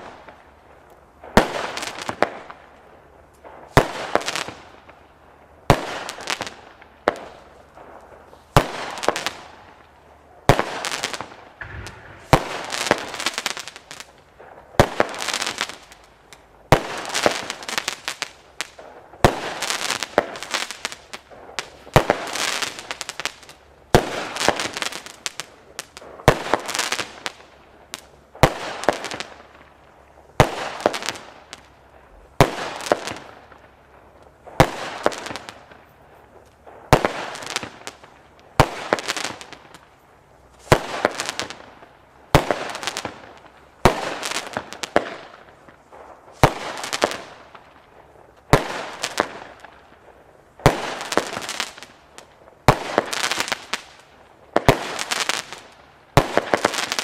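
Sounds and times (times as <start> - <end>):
firework bangs: 0.0 - 0.4, 1.2 - 2.7, 3.4 - 5.0, 5.6 - 57.0
firework crackling: 0.0 - 57.0.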